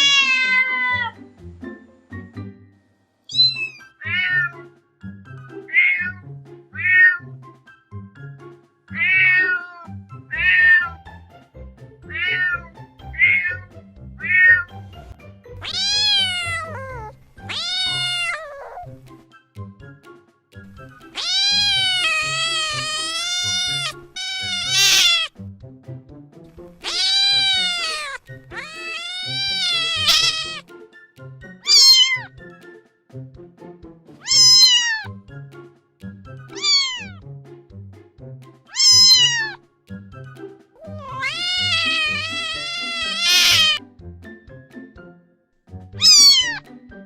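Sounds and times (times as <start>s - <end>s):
cat meowing: 0.0s - 1.2s, 3.3s - 4.6s, 5.7s - 7.2s, 8.9s - 11.0s, 12.1s - 14.7s, 15.6s - 19.0s, 21.1s - 25.3s, 26.8s - 30.6s, 31.6s - 32.3s, 34.2s - 35.2s, 36.5s - 37.2s, 38.7s - 39.6s, 40.8s - 43.8s, 46.0s - 46.6s
background music with beat: 29.6s - 40.8s.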